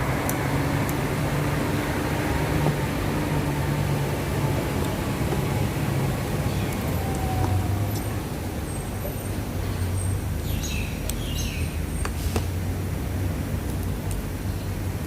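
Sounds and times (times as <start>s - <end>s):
bird chirping: 8.7s - 12.0s.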